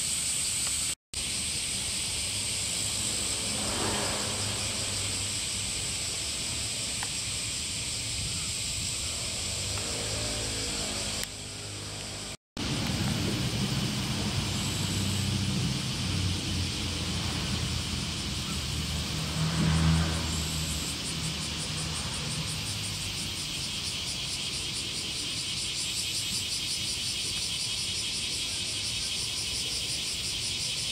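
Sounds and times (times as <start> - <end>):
insect chirring: 0.0 - 30.9
vehicle engine passing by: 2.0 - 7.1, 8.8 - 25.5.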